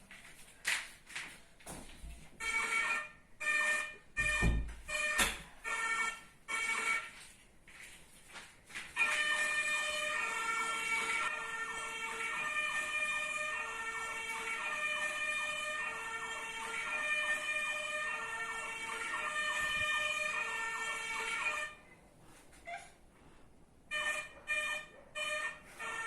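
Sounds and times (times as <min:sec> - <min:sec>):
fire truck siren yelping: 0:02.4 - 0:07.2, 0:09.0 - 0:21.9, 0:23.9 - 0:26.0.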